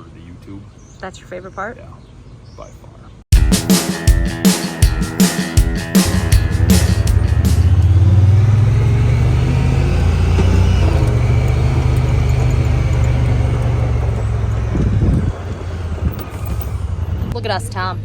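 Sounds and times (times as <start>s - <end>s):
low engine rumble: 6.0s - 18.0s.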